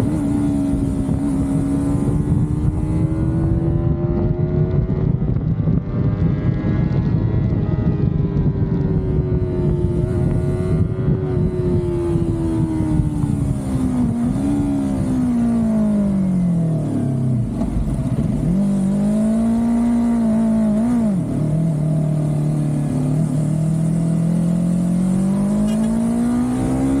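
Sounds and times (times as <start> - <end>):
car engine running: 16.9 - 27.0.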